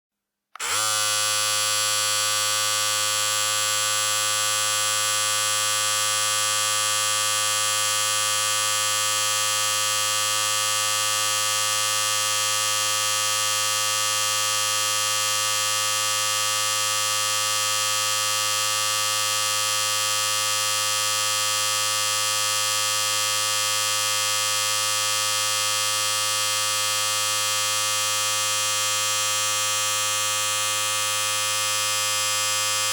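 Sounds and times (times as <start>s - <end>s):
electric hair clippers buzzing: 0.6s - 32.9s.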